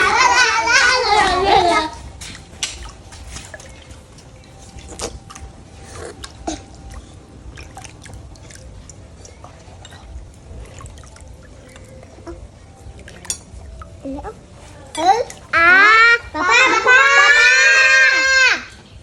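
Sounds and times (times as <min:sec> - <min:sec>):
water dripping and splashing: 0:01.2 - 0:16.2.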